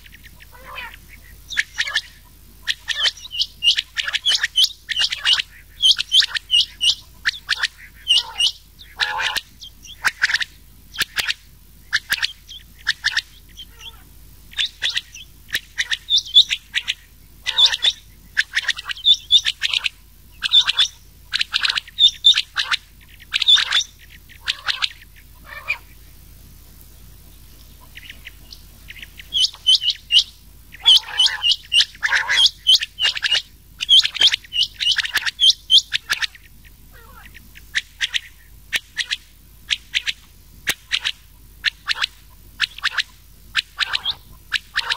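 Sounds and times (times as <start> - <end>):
quail calls: 0.0 - 44.9.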